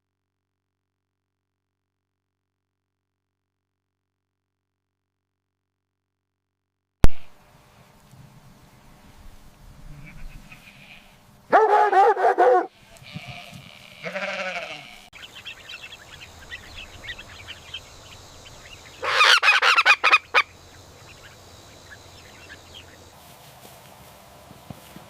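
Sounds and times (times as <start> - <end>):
farm animals calling: 9.8 - 23.1.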